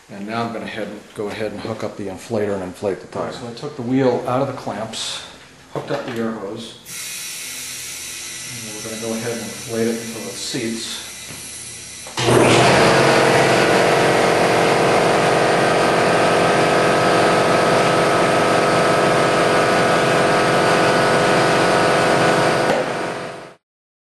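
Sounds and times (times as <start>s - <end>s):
compressed air hissing: 6.8s - 14.1s.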